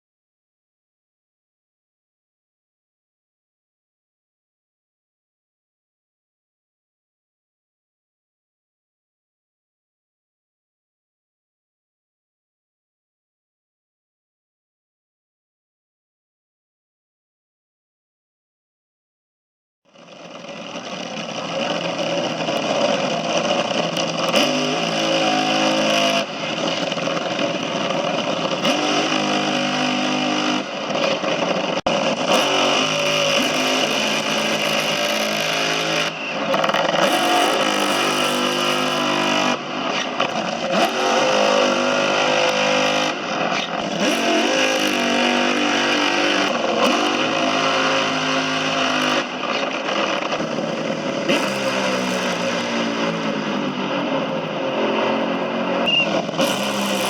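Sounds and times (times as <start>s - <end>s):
dragster engine roaring: 20.0s - 57.0s.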